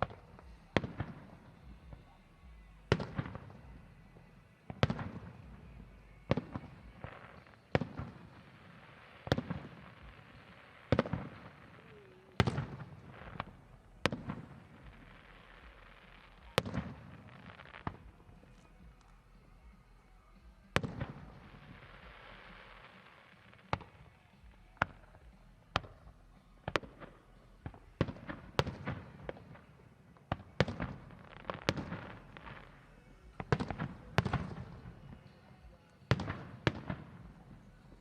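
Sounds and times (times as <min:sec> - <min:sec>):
fireworks bangs: 0:00.0 - 0:19.8, 0:20.4 - 0:38.0
crackling hiss of fireworks: 0:00.0 - 0:38.0.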